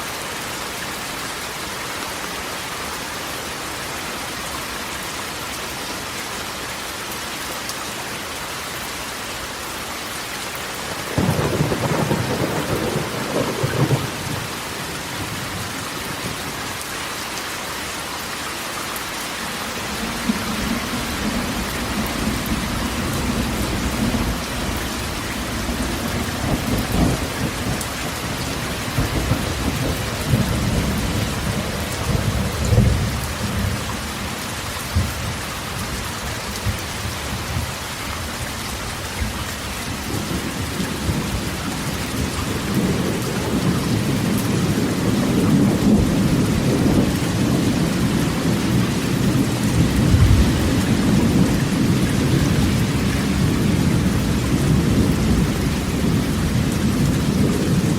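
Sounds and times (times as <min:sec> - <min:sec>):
rain on a metal roof: 0:00.0 - 0:57.9
thunder rumbling: 0:11.1 - 0:14.8, 0:20.0 - 0:33.9, 0:40.1 - 0:57.9.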